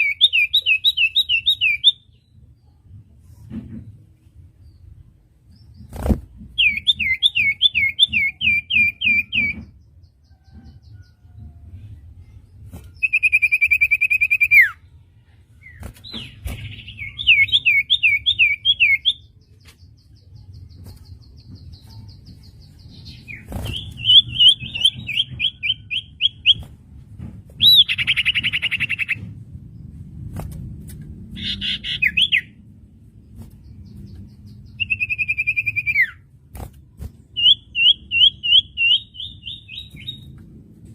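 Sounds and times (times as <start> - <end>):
bird whistling song: 0.0 - 2.2, 6.6 - 9.7, 13.0 - 14.8, 15.7 - 19.4, 21.5 - 26.6, 27.6 - 29.2, 33.8 - 36.2, 37.3 - 40.3.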